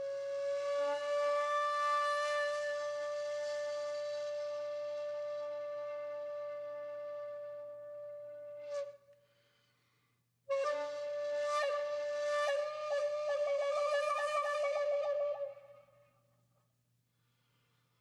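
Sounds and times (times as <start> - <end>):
wind instrument melody: 10.5 - 15.7.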